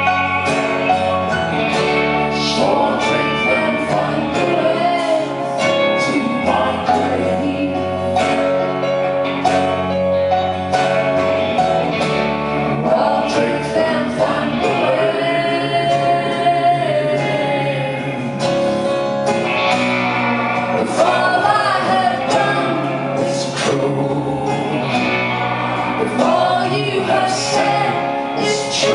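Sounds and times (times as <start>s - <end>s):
guitar and rhythm accompaniment: 0.0s - 28.9s
man and woman singing together: 2.3s - 8.5s, 12.6s - 18.4s, 20.8s - 28.9s.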